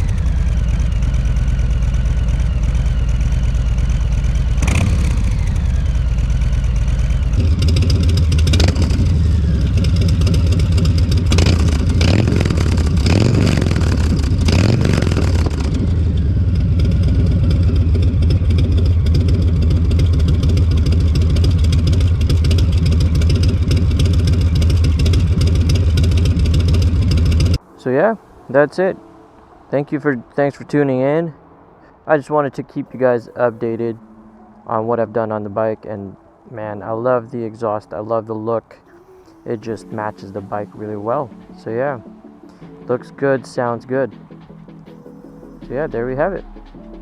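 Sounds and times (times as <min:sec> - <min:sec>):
motorcycle engine idling and revving: 0:00.0 - 0:27.6.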